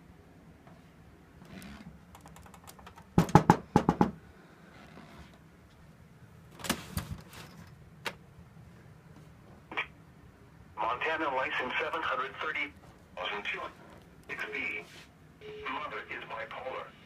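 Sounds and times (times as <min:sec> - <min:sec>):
loud knocks: 0:03.1 - 0:04.2.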